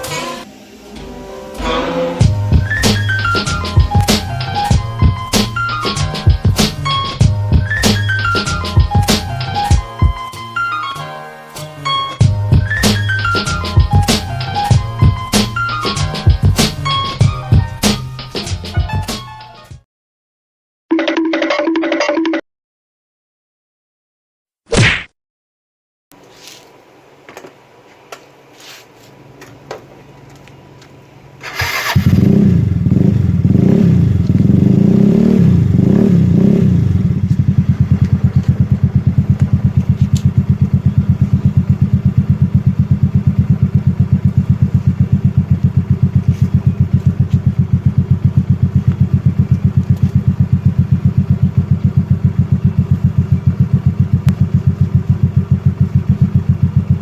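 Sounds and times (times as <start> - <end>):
scooter engine revving and idling: 31.4 - 57.0.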